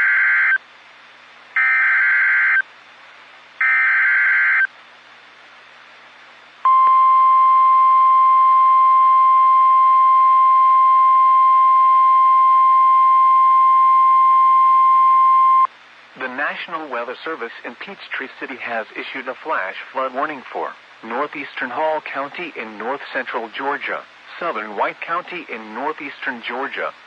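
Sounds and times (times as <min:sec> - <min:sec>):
steady single-pitched attention tone: 0:06.7 - 0:15.7.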